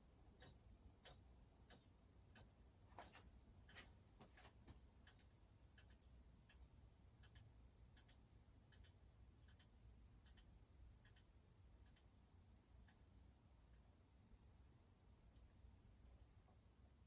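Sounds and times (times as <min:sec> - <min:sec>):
ceiling fan ticking: 0:00.0 - 0:16.6.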